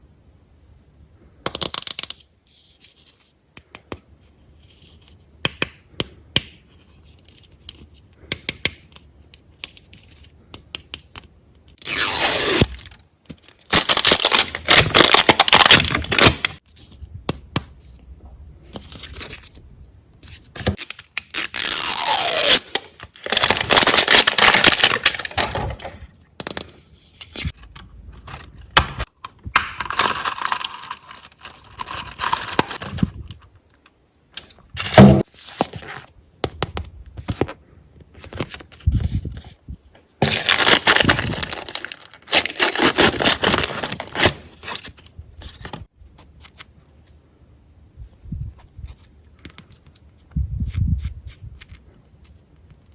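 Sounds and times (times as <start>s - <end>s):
packaging tearing and rustling: 11.8s - 16.6s, 20.7s - 26.0s, 29.8s - 33.1s, 40.2s - 45.9s.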